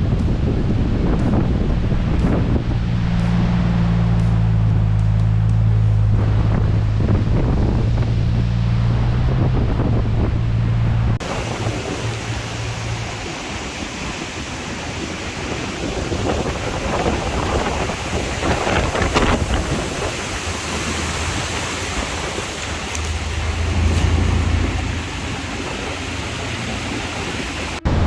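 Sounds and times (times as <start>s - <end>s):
engine droning: 0.0s - 28.0s
fast-flowing river rushing: 11.2s - 27.9s.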